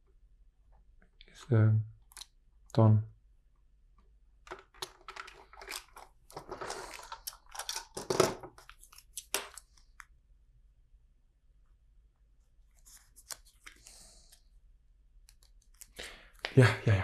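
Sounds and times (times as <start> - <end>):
plastic bricks clicking: 4.5 - 9.7.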